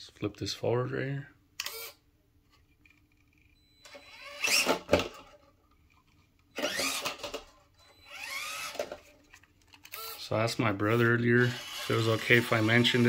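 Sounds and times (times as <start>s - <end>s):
electric motor whining: 6.6s - 7.1s, 8.0s - 8.8s, 11.4s - 13.0s.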